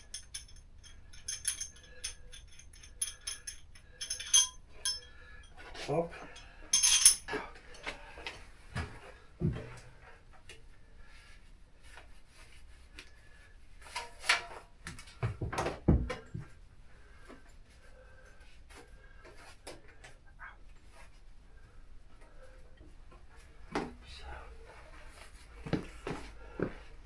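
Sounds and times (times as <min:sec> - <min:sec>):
tools clanking and knocking: 0:00.0 - 0:05.6, 0:06.2 - 0:07.9.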